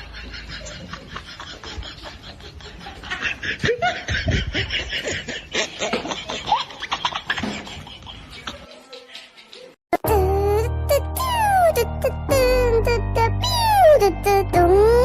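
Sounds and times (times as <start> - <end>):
people laughing: 0.0 - 9.8.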